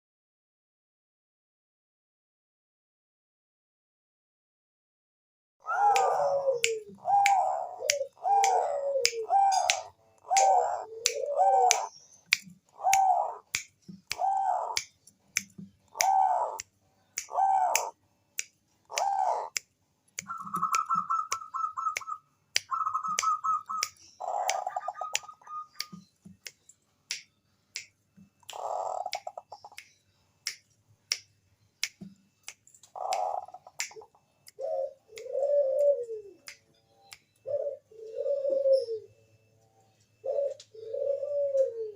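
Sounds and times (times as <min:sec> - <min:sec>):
dove cooing and trilling: 0:05.6 - 0:12.0, 0:12.7 - 0:13.5, 0:14.2 - 0:14.8, 0:15.9 - 0:16.6, 0:17.2 - 0:18.0, 0:18.9 - 0:19.6, 0:20.3 - 0:26.1, 0:28.5 - 0:29.8, 0:32.9 - 0:36.5, 0:37.4 - 0:39.2, 0:40.2 - 0:41.9
sharp clicks: 0:06.0 - 0:37.4.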